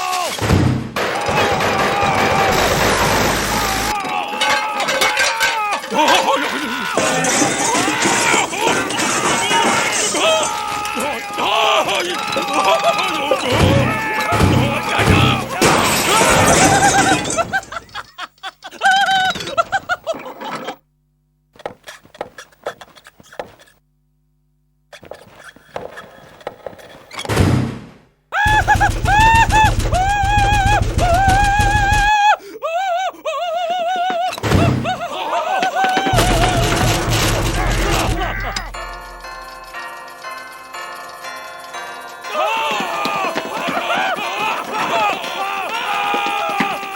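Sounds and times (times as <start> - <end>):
loud clatter: 0.4 - 6.3, 7.0 - 11.0, 28.4 - 32.1, 36.0 - 40.0
cartoon voice high cries: 3.6 - 17.4, 28.4 - 36.8
bell chime ringing: 36.2 - 44.0.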